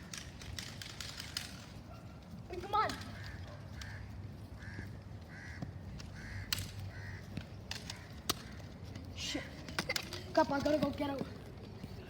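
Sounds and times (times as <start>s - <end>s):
crow cawing: 3.0s - 8.8s.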